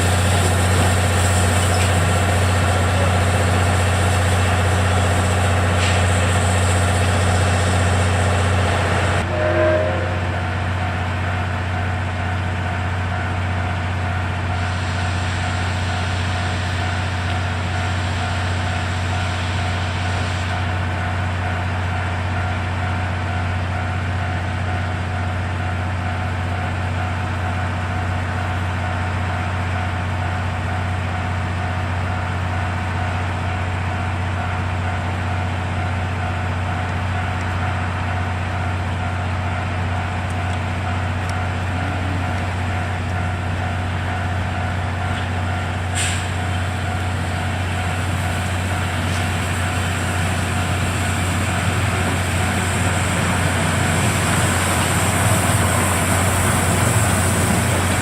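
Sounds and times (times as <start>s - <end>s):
engine idling hum: 0.0s - 58.0s
brief squeal: 9.2s - 10.8s.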